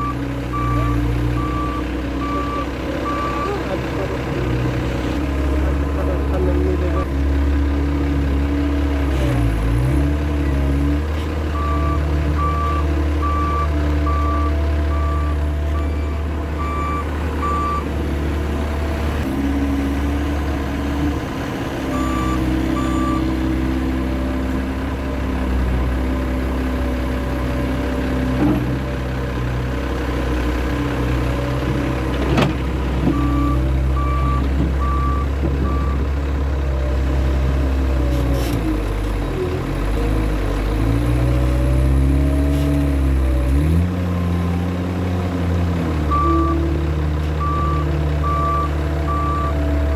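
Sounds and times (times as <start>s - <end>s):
loader engine running: 0.0s - 49.9s
reversing alarm beeping: 11.6s - 17.8s, 22.0s - 23.3s, 33.1s - 36.0s, 47.4s - 49.9s.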